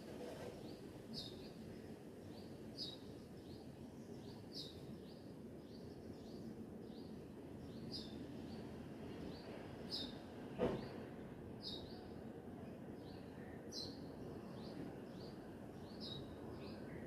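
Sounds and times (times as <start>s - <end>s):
low background noise: 0.0s - 17.0s
bird chirping: 14.6s - 17.0s.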